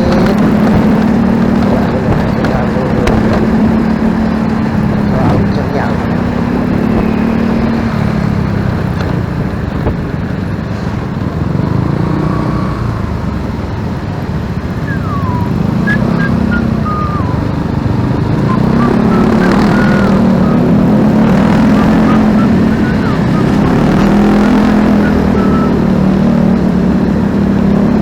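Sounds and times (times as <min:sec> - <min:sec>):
motorcycle engine running: 0:00.0 - 0:28.0
road and wind noise: 0:00.0 - 0:28.0.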